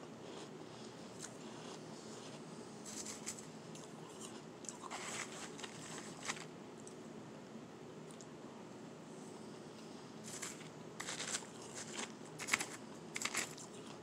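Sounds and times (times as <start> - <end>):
chewing crunchy shaved ice: 0.2 - 7.0, 10.2 - 14.0.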